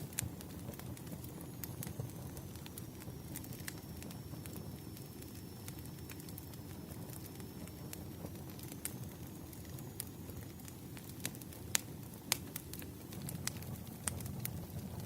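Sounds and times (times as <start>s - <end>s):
burning wood crackling and popping: 0.0s - 15.0s
campfire flames rushing: 0.0s - 15.0s.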